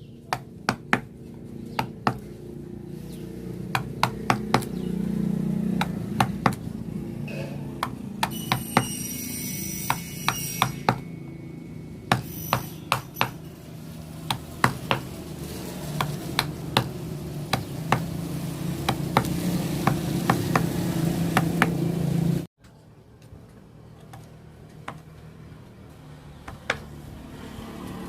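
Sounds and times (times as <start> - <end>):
mallet striking chisel into wood: 1.8 - 2.2, 3.7 - 4.7, 5.8 - 6.6, 7.8 - 8.9, 9.9 - 11.1, 12.1 - 13.4, 14.3 - 15.0.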